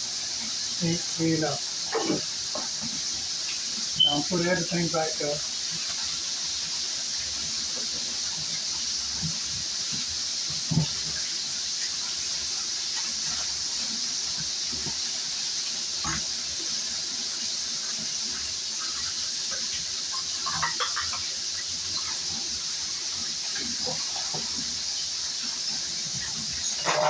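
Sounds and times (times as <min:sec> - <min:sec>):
fish sizzling in oil: 0:00.0 - 0:27.0
kitchenware clinks: 0:20.4 - 0:21.2, 0:26.6 - 0:27.0.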